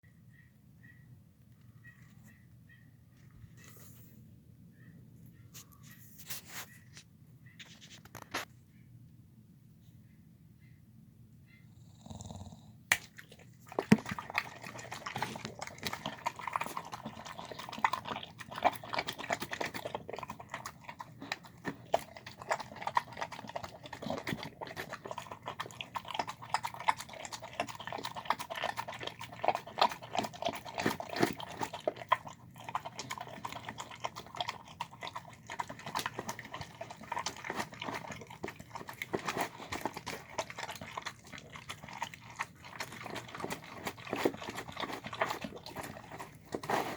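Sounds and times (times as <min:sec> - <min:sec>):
dog eating wet food: 0:12.9 - 0:46.9.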